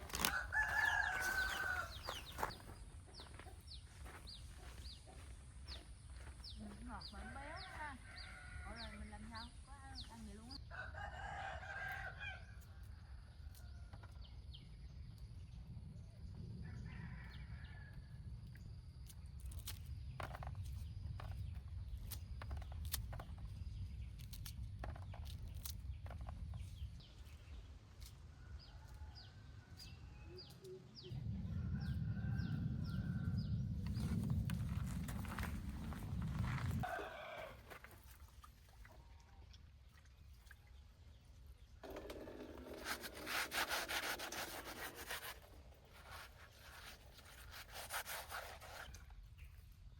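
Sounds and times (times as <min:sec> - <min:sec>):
rooster crowing: 0:00.2 - 0:02.5, 0:10.6 - 0:12.5, 0:31.5 - 0:33.6, 0:36.4 - 0:37.8
steady low rumble: 0:30.7 - 0:36.9.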